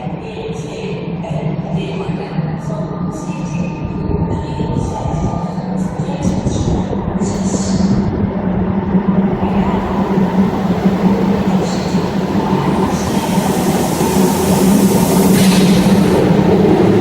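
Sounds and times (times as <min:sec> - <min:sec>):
train rumbling on rails: 0:00.0 - 0:17.0
hiss: 0:09.4 - 0:17.0.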